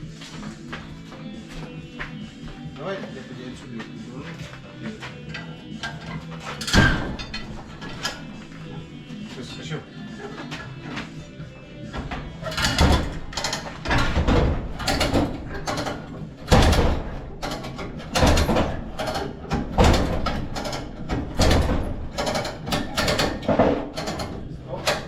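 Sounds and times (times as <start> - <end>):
hand winch ratcheting: 12.4 - 25.0.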